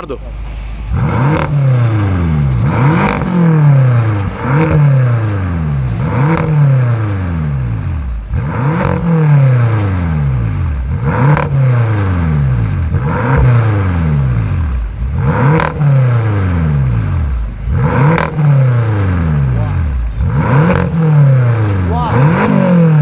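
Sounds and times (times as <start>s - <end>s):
car engine revving: 0.0s - 23.0s.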